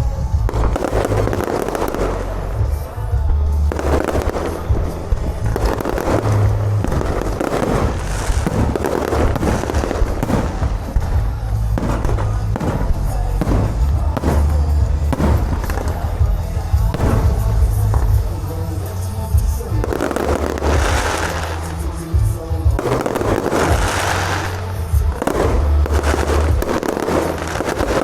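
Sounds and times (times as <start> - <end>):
fireworks and firecrackers banging: 0.0 - 28.0
music playing: 0.0 - 28.0.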